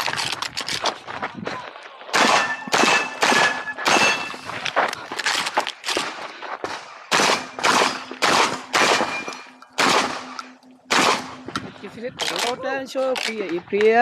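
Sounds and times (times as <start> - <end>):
shotgun shots with echo: 2.1 - 4.5, 5.9 - 11.5.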